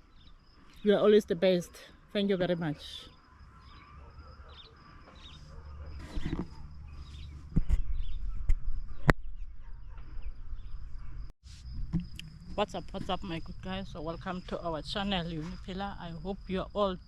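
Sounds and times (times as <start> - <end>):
faint high chirping: 0.0 - 17.0
wind rumble on microphone: 6.0 - 15.6.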